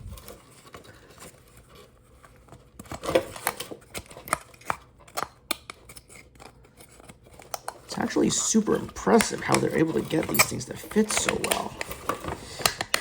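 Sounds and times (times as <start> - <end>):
plastic parts clicking and knocking: 2.8 - 7.9, 9.0 - 13.0.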